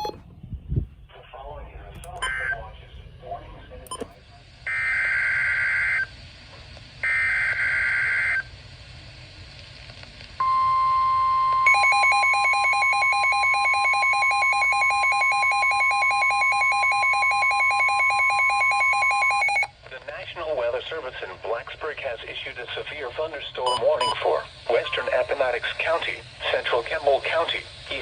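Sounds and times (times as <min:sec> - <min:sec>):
steady alarm tone: 0:11.6 - 0:19.7
rapidly pulsing beep: 0:11.7 - 0:19.7, 0:23.7 - 0:24.2.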